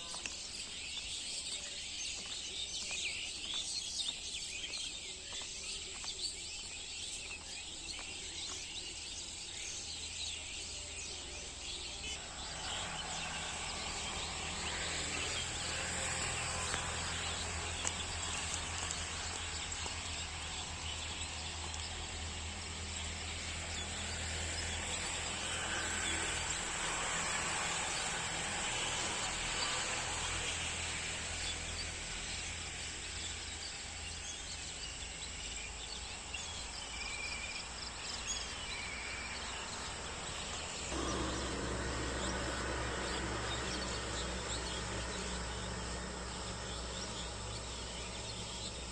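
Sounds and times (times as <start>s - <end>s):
small birds chirping: 0.0s - 48.9s
high insect drone: 8.0s - 48.9s
low rumble: 40.6s - 48.8s.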